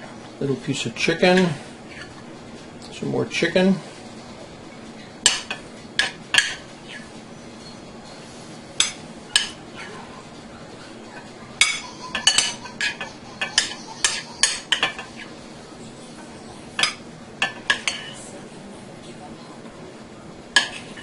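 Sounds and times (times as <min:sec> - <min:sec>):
utensil clinking and scraping on bowl: 0:11.2 - 0:15.3.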